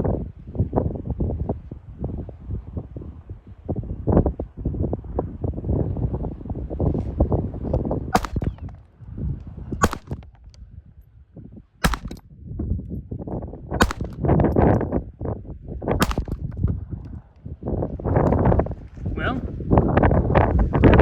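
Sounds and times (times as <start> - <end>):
pistol shots: 8.2 - 8.8, 9.8 - 10.6, 11.8 - 12.2, 13.8 - 14.4, 16.0 - 16.6.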